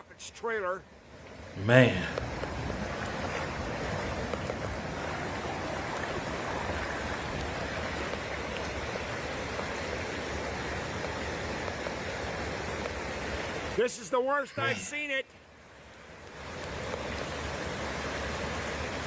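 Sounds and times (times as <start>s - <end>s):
running floodwater: 0.0s - 19.0s
heavy rain: 1.1s - 13.8s.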